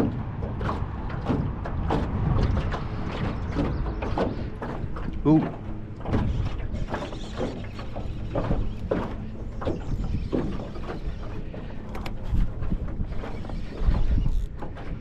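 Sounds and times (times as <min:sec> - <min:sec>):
low rumble of wind noise: 0:00.0 - 0:15.0
fishing reel cranking: 0:13.3 - 0:14.6.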